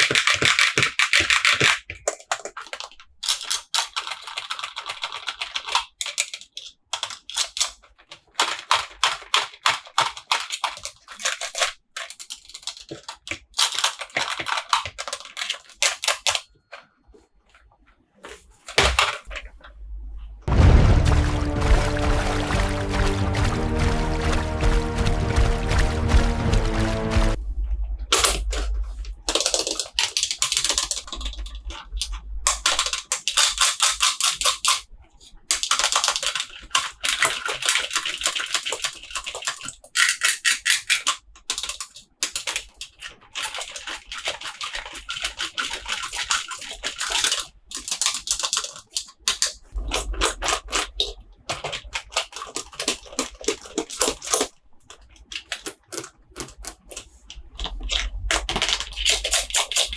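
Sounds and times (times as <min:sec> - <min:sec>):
packaging crackling and rustling: 0:01.2 - 0:19.7, 0:28.1 - 0:59.9
low handling thump: 0:19.7 - 0:28.1.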